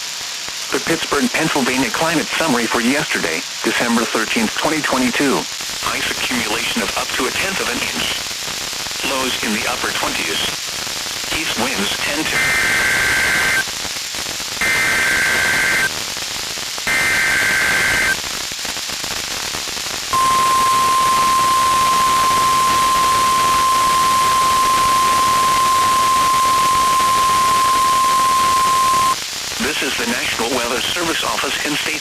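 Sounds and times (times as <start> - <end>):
radio static: 0.8 - 8.2, 11.3 - 13.6, 14.6 - 15.9, 16.9 - 18.2, 20.2 - 32.0
screechy data bursts: 12.3 - 13.7, 14.6 - 15.9, 16.9 - 18.2, 20.2 - 29.2
steady warning alarm tone: 14.6 - 15.9, 16.9 - 18.2, 20.2 - 29.2.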